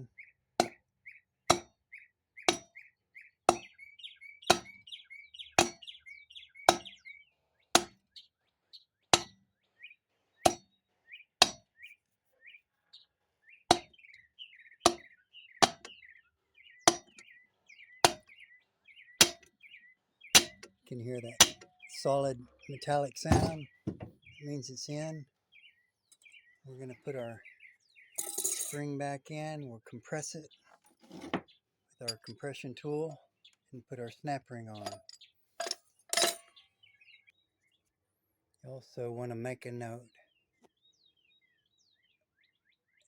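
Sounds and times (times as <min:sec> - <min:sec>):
pry bar tapping metal: 0:02.5 - 0:02.7, 0:03.5 - 0:03.7, 0:04.5 - 0:04.8, 0:05.6 - 0:05.8, 0:06.7 - 0:06.9, 0:07.8 - 0:08.0, 0:09.2 - 0:09.4, 0:11.4 - 0:11.6, 0:13.7 - 0:13.9, 0:14.9 - 0:15.9, 0:16.9 - 0:17.2, 0:18.0 - 0:18.3, 0:19.2 - 0:19.5, 0:20.4 - 0:20.7, 0:21.4 - 0:21.7, 0:23.2 - 0:24.1, 0:28.2 - 0:28.9, 0:34.8 - 0:36.5.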